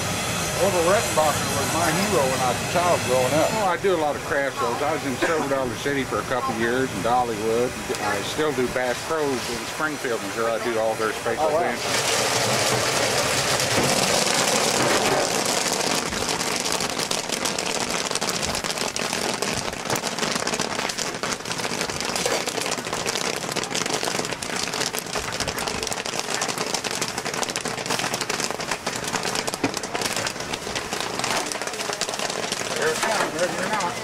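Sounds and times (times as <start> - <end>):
sizzling hiss: 0.0 - 34.0
kernels popping: 11.8 - 34.0.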